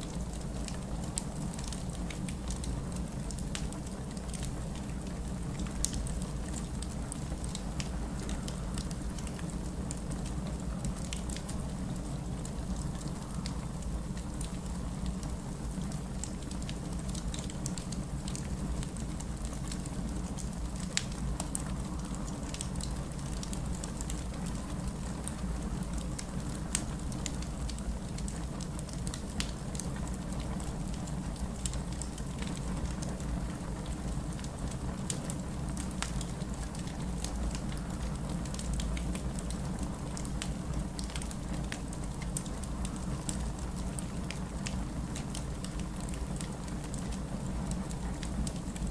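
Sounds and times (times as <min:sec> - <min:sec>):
wood fire crackling and popping: 0:00.1 - 0:48.9.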